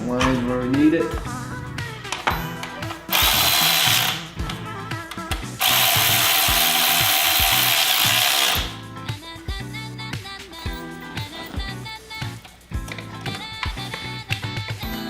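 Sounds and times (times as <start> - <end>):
background music with beat: 0.0 - 15.0
power drill driving bolts: 2.2 - 4.6, 5.3 - 8.8.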